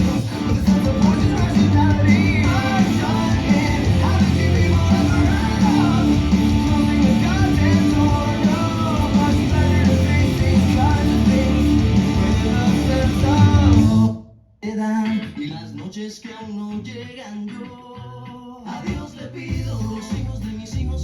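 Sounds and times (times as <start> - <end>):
rock song with singing and guitar: 0.0 - 21.0.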